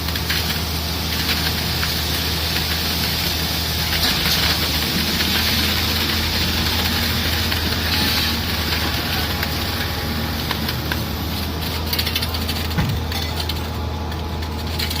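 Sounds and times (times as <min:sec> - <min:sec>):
excavator diesel engine running: 0:03.2 - 0:15.0
knock: 0:12.8 - 0:13.1.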